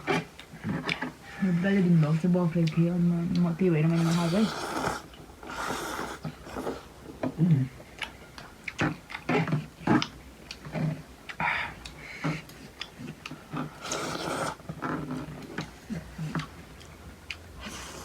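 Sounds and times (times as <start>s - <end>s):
chewing and smacking mouth noises: 7.8s - 18.0s.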